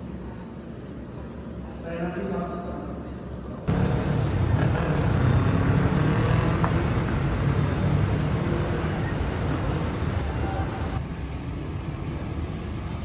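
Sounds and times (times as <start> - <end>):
low rumbling vehicle noise: 3.7 - 13.0.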